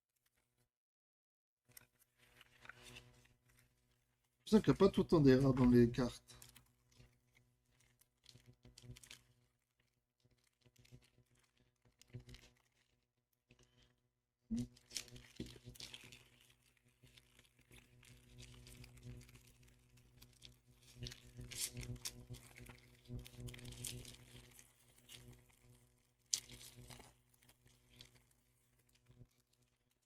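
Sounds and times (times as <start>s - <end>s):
foil wrapper tearing and crinkling: 7.8s - 13.0s, 14.7s - 30.0s.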